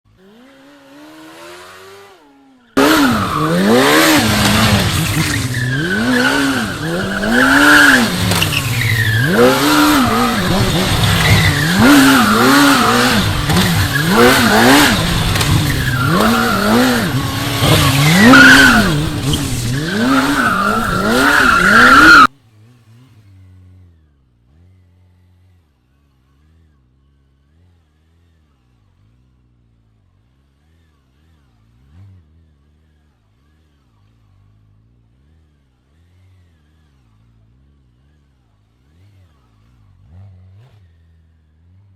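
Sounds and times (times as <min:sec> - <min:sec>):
motorcycle engine revving: 0:00.1 - 0:41.9
tyre squealing: 0:02.8 - 0:22.3.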